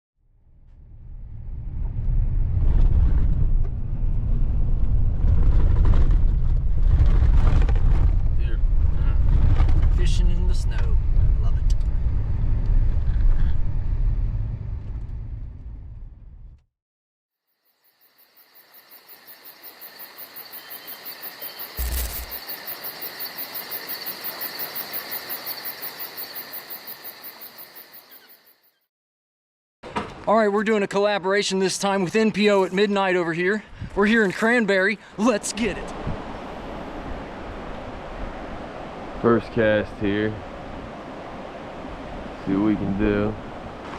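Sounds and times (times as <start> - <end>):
vehicle driving rumble: 0.6 - 16.6
insects chirping: 17.4 - 28.8.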